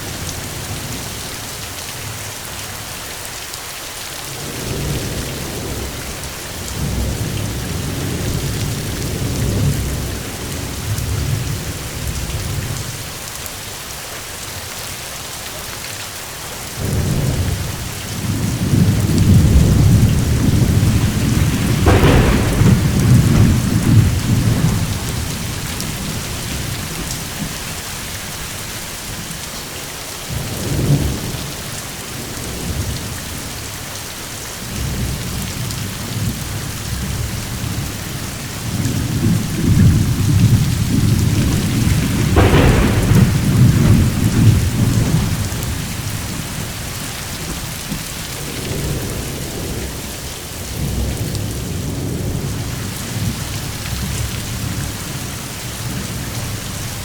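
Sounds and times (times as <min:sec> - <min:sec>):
steady rain hissing: 0:00.0 - 0:57.0
sharp thunder crack: 0:16.8 - 0:29.2, 0:38.7 - 0:49.9
thunder rumbling: 0:16.8 - 0:29.7, 0:34.6 - 0:57.0.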